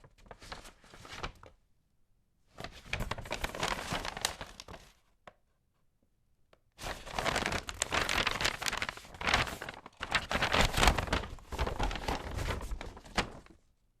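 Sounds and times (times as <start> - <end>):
paper bag crinkling: 2.7 - 5.0, 6.8 - 13.6.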